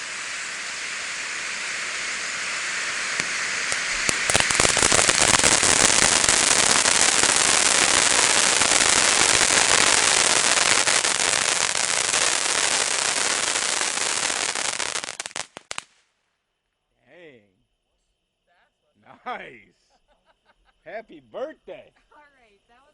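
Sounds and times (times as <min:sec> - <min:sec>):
firework fountain hissing and crackling: 0:00.0 - 0:16.1.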